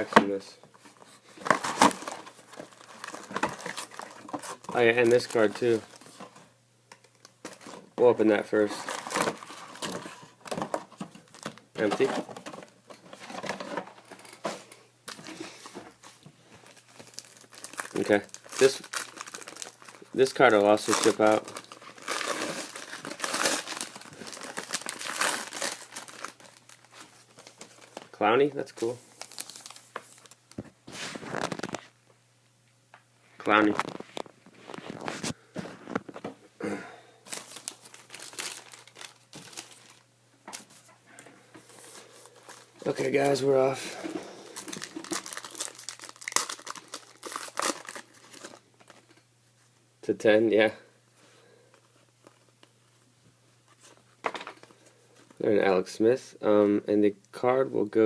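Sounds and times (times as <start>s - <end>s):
card wrappers crinkling: 1.3s - 6.4s, 8.4s - 14.4s, 15.1s - 28.1s, 28.8s - 31.8s, 37.2s - 40.6s, 41.7s - 49.2s.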